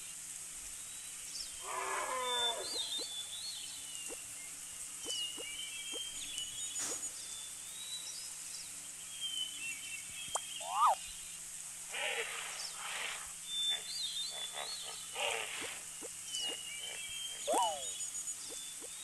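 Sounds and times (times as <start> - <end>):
high bird chirps: 2.4 - 3.3, 5.0 - 6.8, 10.3 - 11.0, 15.4 - 19.0.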